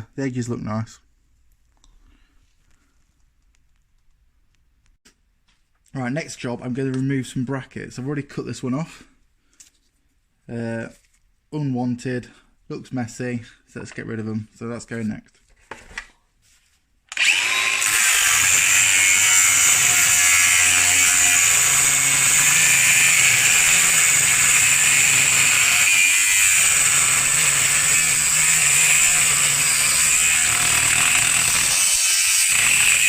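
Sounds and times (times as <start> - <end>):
angle grinder cutting metal: 17.1 - 33.0.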